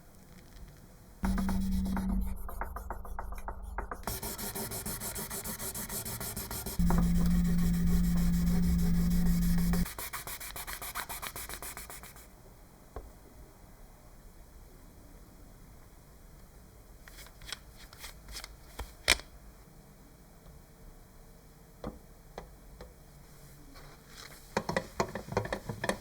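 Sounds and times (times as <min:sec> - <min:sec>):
power tool humming: 0:01.2 - 0:09.9
sanding strokes: 0:04.0 - 0:12.3.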